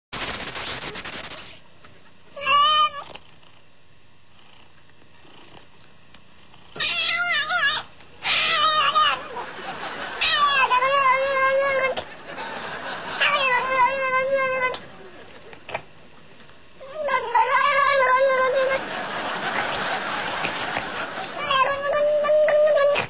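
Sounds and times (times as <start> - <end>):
cat yowling: 2.4 - 3.0, 6.8 - 9.4, 10.2 - 12.0, 13.2 - 14.8, 16.8 - 18.8, 21.4 - 23.0.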